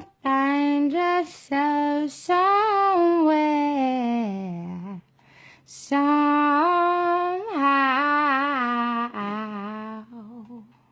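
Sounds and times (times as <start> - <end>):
quick breath in: 5.2 - 5.7
woman humming a slow melody: 6.2 - 10.9.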